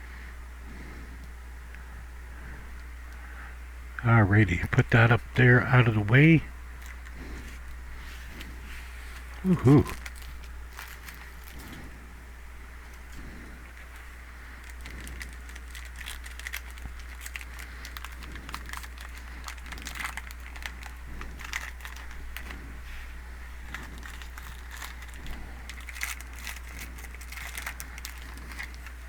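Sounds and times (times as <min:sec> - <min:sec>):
steady low hum: 0:00.0 - 0:29.0
plastic packaging crinkling: 0:08.3 - 0:11.9, 0:13.8 - 0:29.0.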